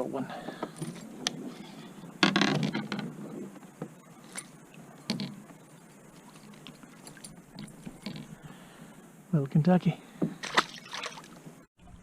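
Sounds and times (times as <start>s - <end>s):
fish splashing: 10.4s - 12.0s.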